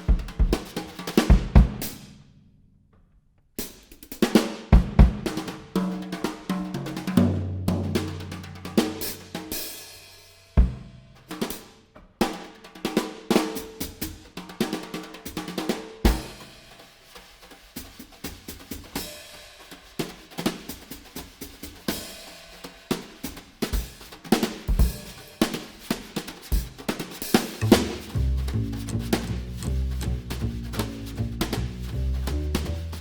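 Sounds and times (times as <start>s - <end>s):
drum kit music: 0.0s - 2.1s, 3.6s - 11.6s, 18.5s - 33.0s
held low bass note: 27.6s - 33.0s.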